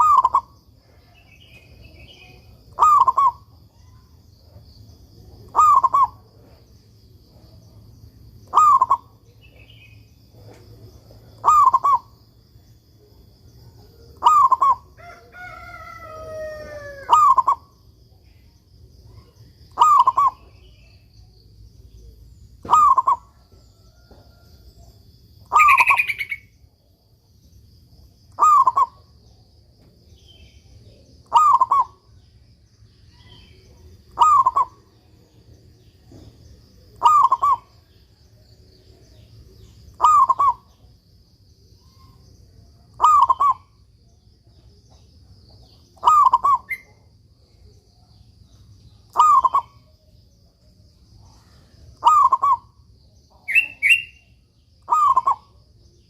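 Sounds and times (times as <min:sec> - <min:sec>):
dove cooing: 0:00.0 - 0:03.5, 0:05.3 - 0:06.6, 0:08.5 - 0:09.6, 0:10.3 - 0:12.2, 0:13.8 - 0:17.7, 0:19.1 - 0:20.8, 0:22.6 - 0:24.5, 0:28.4 - 0:29.1, 0:31.2 - 0:32.0, 0:33.2 - 0:35.1, 0:36.9 - 0:37.8, 0:39.9 - 0:40.9, 0:43.0 - 0:43.7, 0:46.0 - 0:47.0, 0:49.1 - 0:49.8, 0:52.0 - 0:52.8, 0:54.9 - 0:55.6.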